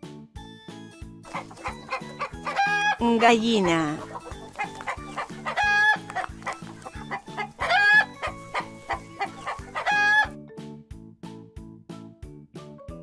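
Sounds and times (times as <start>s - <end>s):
hen clucking: 1.3s - 10.3s
background music with beat: 4.0s - 10.3s.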